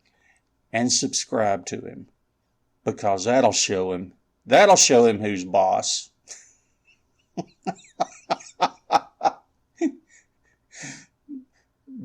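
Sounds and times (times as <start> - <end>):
breath: 0.0 - 0.5, 10.1 - 11.7.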